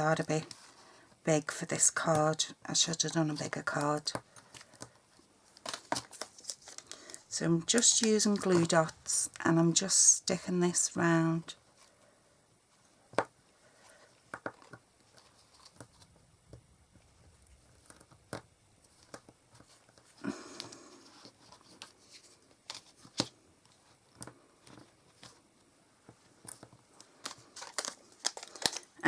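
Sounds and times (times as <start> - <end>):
crinkly rustle: 2.8 - 9.4, 15.0 - 16.2, 17.0 - 29.0.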